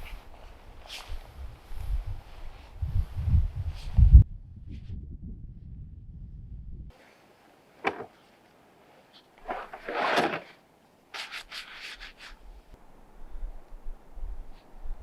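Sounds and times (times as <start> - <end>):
crunching and scraping in snow: 9.1 - 10.6.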